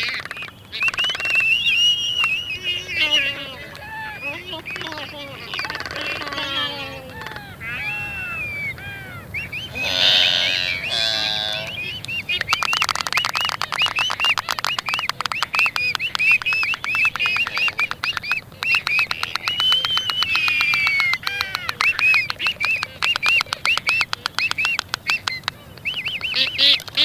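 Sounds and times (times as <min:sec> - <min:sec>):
albatrosses calling: 0:00.0 - 0:27.0
bill-clapping rattle of clicks: 0:12.0 - 0:27.0.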